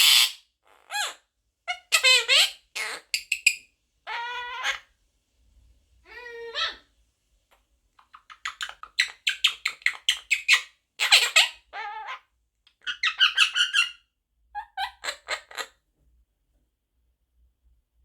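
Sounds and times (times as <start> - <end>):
parakeet chattering: 0.0 - 4.8, 8.0 - 14.0, 14.6 - 15.7
harsh parrot squawk: 0.0 - 4.9, 6.0 - 6.9, 8.1 - 15.8.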